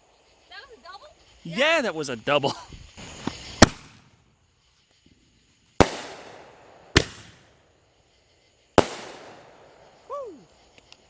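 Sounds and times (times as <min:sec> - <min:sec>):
firework shells bursting: 0:02.7 - 0:04.4, 0:05.7 - 0:07.7, 0:08.7 - 0:11.0.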